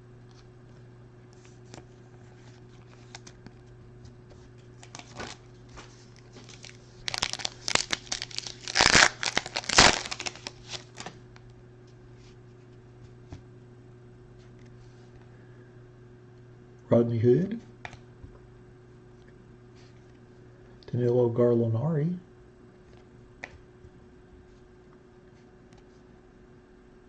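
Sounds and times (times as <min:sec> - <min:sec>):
wrapper crinkling and tearing: 0:04.7 - 0:11.2.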